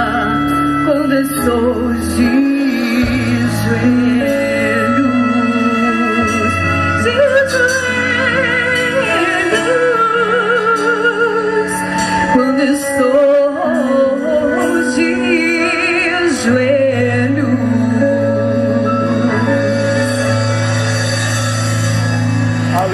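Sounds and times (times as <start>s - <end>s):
woman singing with vibrato: 0.0s - 20.7s
orchestra playing: 0.0s - 22.9s.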